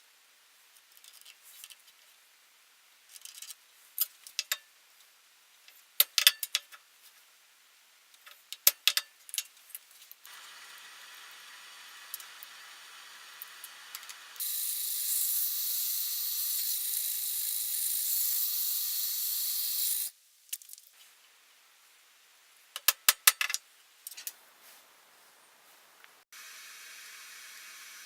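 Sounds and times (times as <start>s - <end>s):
high hissing tool: 10.3s - 20.1s.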